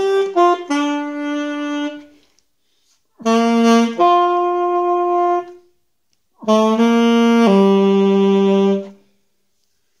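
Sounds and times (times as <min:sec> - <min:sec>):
saxophone holding notes: 0:00.0 - 0:02.3, 0:03.2 - 0:05.8, 0:06.4 - 0:09.0.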